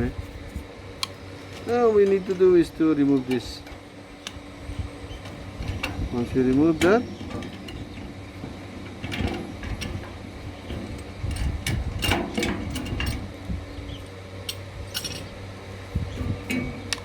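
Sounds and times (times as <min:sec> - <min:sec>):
metal tools clicking and knocking: 0:14.5 - 0:15.3.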